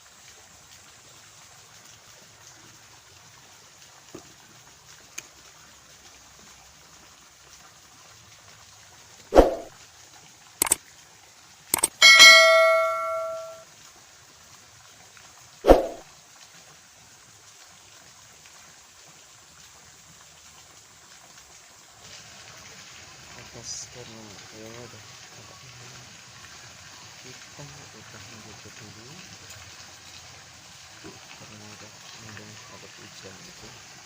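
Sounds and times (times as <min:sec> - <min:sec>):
metallic clang ringing: 0:11.8 - 0:13.6.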